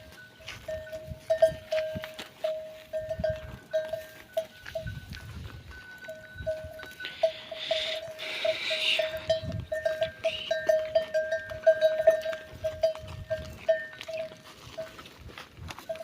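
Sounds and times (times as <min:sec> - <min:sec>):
livestock bells ringing: 0:00.0 - 0:15.2, 0:15.8 - 0:16.0
farm animals calling: 0:05.9 - 0:15.1.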